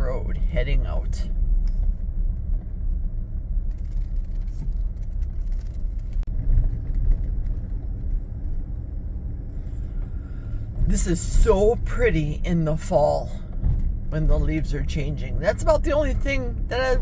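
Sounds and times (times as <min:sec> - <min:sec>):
car engine and tyres rumbling: 0:00.0 - 0:17.0
car bumps: 0:13.5 - 0:14.4.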